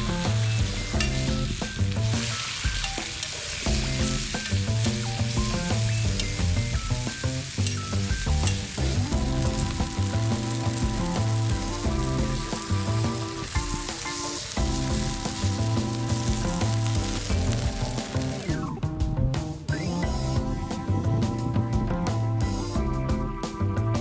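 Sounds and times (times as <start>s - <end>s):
background music: 0.0s - 24.0s
food sizzling on a griddle: 2.2s - 3.7s.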